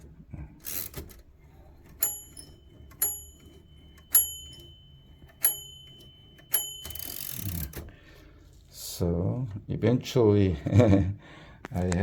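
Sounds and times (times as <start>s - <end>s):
typewriter bell dinging: 1.9s - 7.9s.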